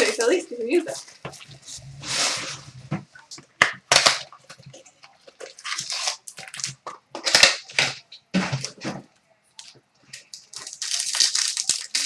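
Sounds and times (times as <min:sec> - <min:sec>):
foil wrappers tearing and crinkling: 0:03.8 - 0:08.8, 0:09.6 - 0:12.0.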